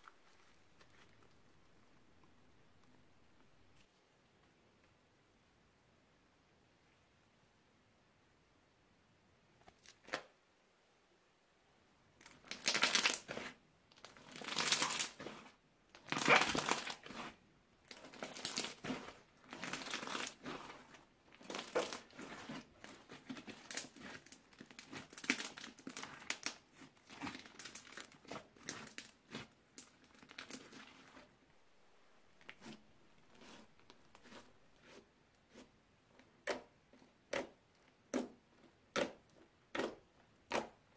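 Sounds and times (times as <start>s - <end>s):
crunchy slime crackling: 12.2s - 31.3s.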